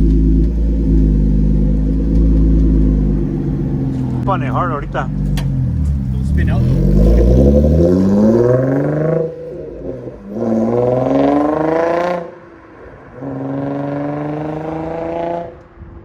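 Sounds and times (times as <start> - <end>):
car engine accelerating hard: 0.0 - 16.0.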